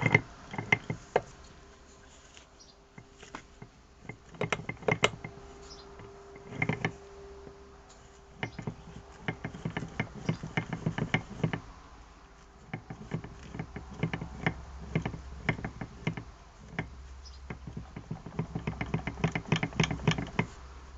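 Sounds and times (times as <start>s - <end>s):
faint steady hum: 0.0s - 20.9s
mechanical clicking and ticking: 17.5s - 20.5s.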